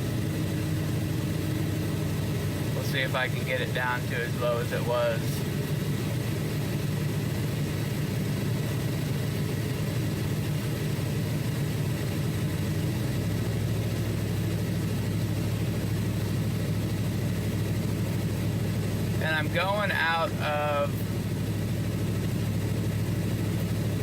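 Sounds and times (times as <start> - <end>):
air conditioning blower: 0.0 - 13.6
car engine running inside cab: 0.0 - 24.0.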